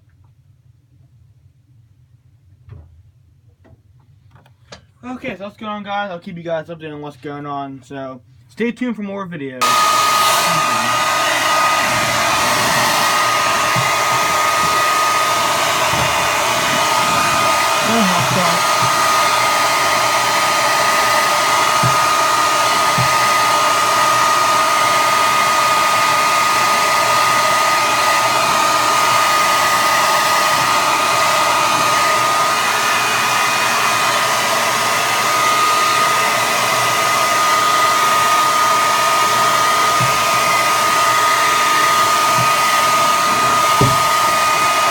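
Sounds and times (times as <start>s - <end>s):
hair dryer blowing: 9.6s - 44.9s.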